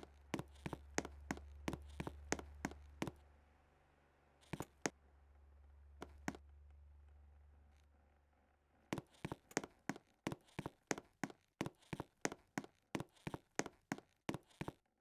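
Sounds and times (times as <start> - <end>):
footsteps on a hard floor: 0.0 - 3.2, 9.0 - 14.8.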